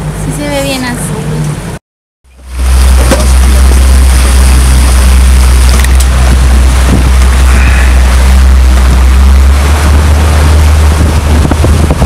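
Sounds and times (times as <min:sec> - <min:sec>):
motorboat running at speed: 0:00.0 - 0:12.0
water rushing: 0:01.1 - 0:12.0
wind on microphone: 0:02.5 - 0:12.0.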